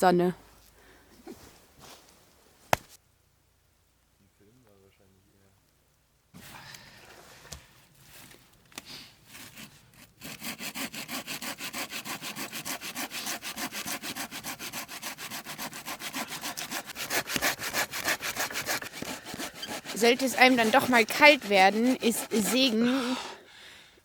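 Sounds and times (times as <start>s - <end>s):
hand saw cutting wood: 9.3s - 23.4s.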